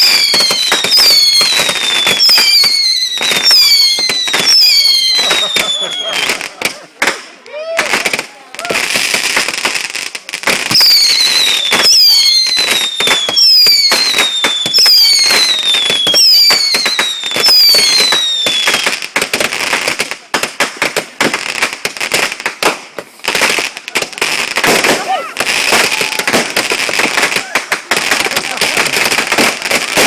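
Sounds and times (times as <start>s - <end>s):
firework whistles falling in pitch: 0.0s - 6.4s, 10.7s - 19.0s
fireworks crackling pops: 0.0s - 30.0s.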